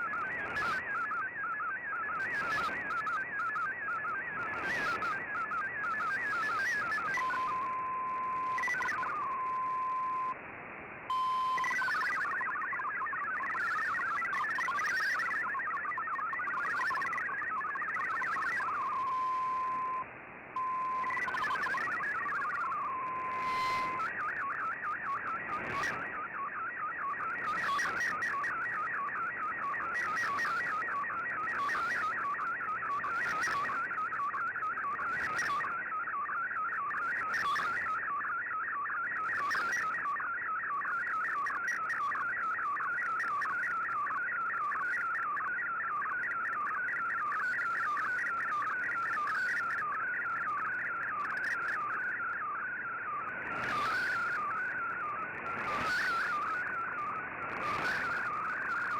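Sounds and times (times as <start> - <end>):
warble of sweeping radio tones: 34.9 - 58.9.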